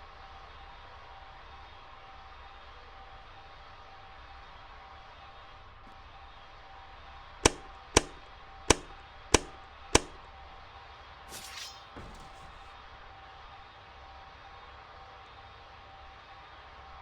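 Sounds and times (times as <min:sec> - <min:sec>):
sharp clicks: 0:07.4 - 0:10.3
brief rustle: 0:11.3 - 0:12.8.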